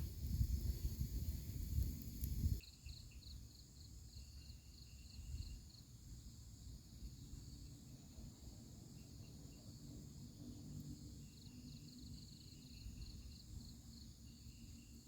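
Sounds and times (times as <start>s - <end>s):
crickets trilling: 0.0s - 15.0s.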